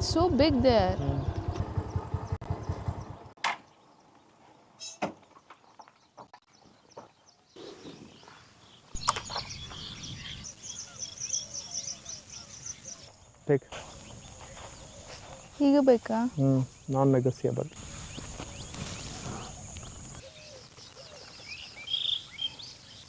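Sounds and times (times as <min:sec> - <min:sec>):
motorcycle engine running: 0:00.0 - 0:03.4.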